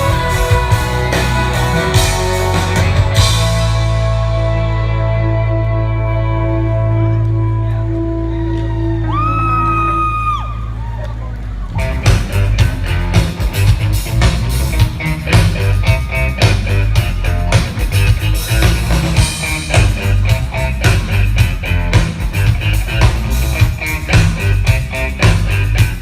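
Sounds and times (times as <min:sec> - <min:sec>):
steady drum beat: 0:00.0 - 0:04.2, 0:11.8 - 0:26.0
bass guitar: 0:00.0 - 0:26.0
electric guitar: 0:00.0 - 0:26.0.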